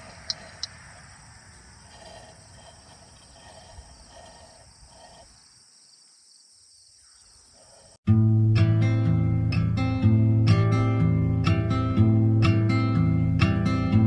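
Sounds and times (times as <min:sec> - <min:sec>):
crickets chirping: 0:00.0 - 0:08.0
acoustic guitar music: 0:08.1 - 0:14.0.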